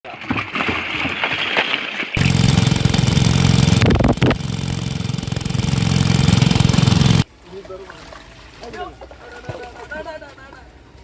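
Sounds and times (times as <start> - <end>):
small engine running: 2.2 - 7.2.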